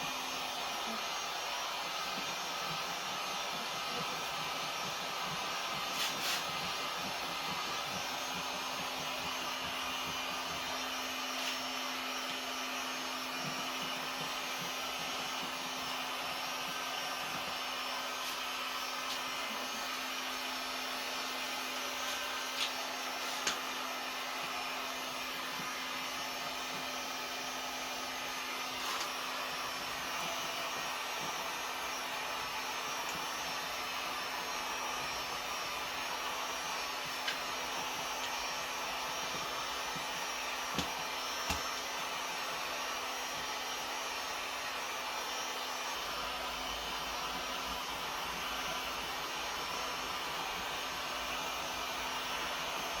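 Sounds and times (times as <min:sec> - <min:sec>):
heat gun running: 0:00.0 - 0:53.0.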